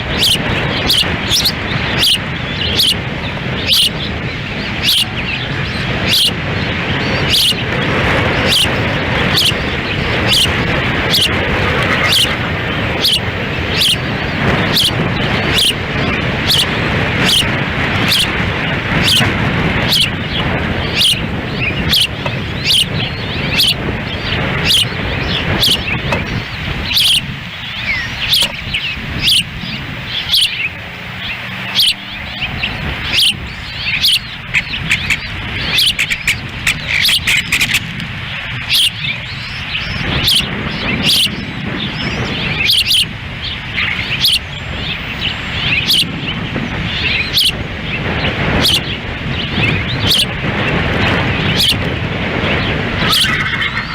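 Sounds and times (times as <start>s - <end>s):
birds chirping high calls: 0.0s - 53.9s
wind rumble on microphone: 0.0s - 53.9s.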